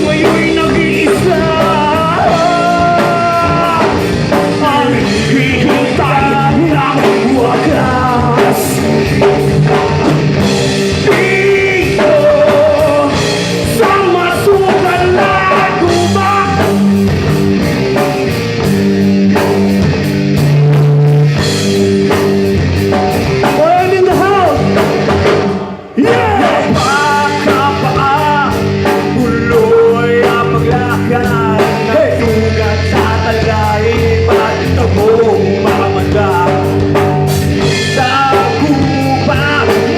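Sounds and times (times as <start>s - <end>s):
person singing: 0.0s - 9.4s, 10.9s - 16.9s, 25.9s - 39.9s
bass guitar: 0.0s - 39.9s
drum kit: 0.0s - 39.9s
electric guitar: 0.0s - 39.9s.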